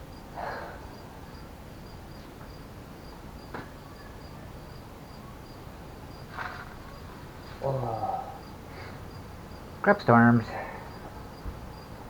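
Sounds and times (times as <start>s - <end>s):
cricket chirping: 0.0s - 12.0s.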